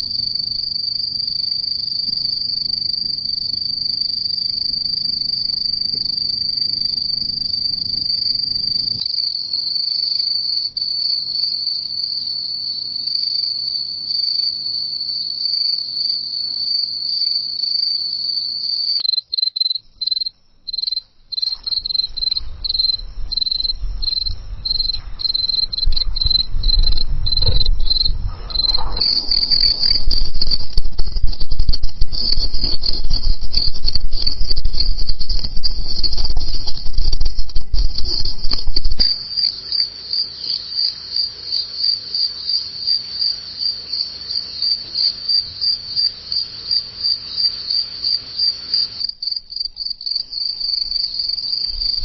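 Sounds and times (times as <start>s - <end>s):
crickets chirping: 0.0s - 52.0s
low rumble: 22.0s - 39.2s.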